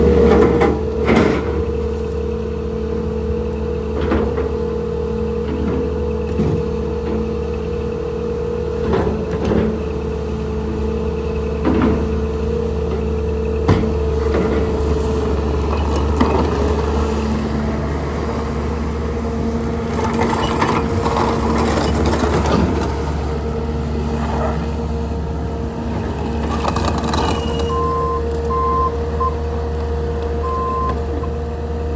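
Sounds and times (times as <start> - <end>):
diesel engine running: 0.0 - 31.9
reverse alarm beeping: 27.5 - 29.6, 30.4 - 31.1.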